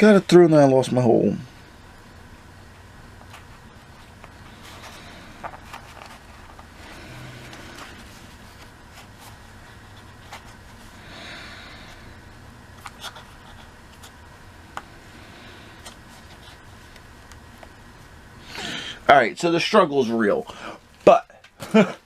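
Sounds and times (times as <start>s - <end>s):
low room hum: 0.0s - 22.0s.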